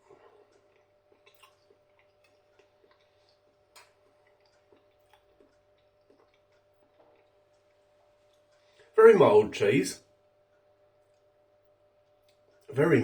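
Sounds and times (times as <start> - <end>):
person chewing: 0.0 - 8.8
faint steady hum: 0.0 - 13.0.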